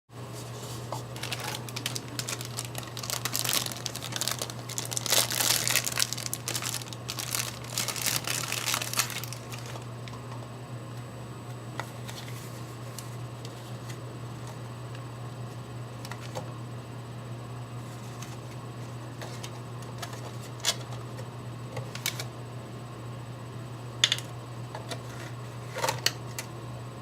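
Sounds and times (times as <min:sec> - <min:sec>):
steady low hum: 0:00.1 - 0:27.0
packaging crinkling: 0:01.0 - 0:10.2.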